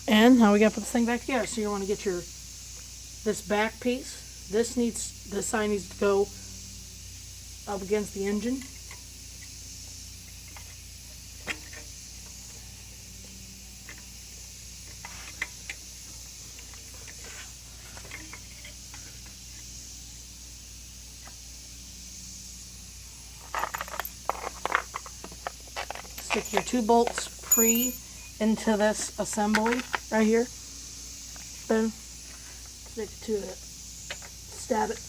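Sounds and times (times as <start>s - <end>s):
parts clicking and tapping: 23.5s - 28.0s, 29.0s - 30.2s, 34.0s - 35.0s.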